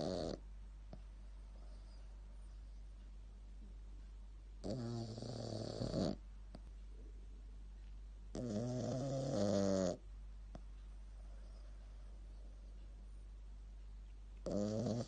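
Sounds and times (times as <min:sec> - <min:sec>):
dog snoring: 0:00.0 - 0:00.4, 0:04.6 - 0:06.2, 0:08.3 - 0:10.0, 0:14.4 - 0:15.0.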